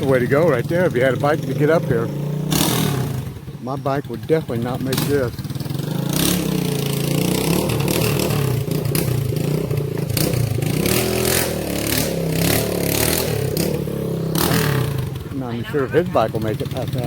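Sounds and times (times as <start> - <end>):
small motorcycle engine revving: 0.0 - 17.0.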